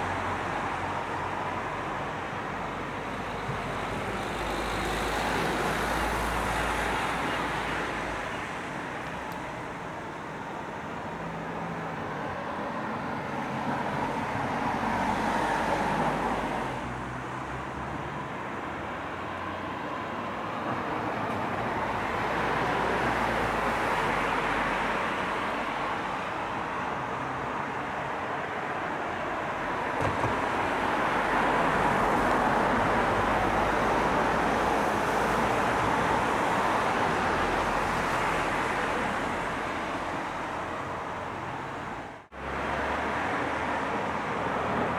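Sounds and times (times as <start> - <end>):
tyres rushing and engines: 0.0 - 44.9
vehicles passing: 13.0 - 44.9.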